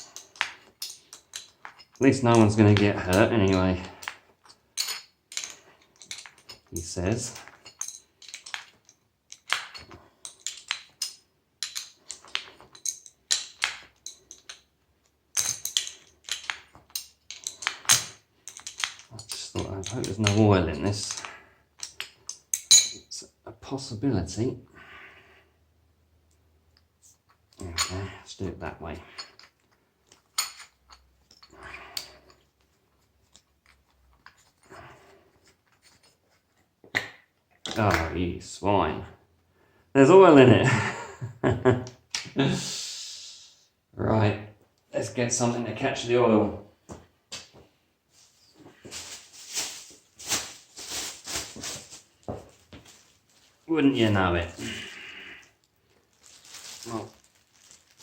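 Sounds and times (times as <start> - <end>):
metallic tool clicks and clinks: 0.0 - 23.1.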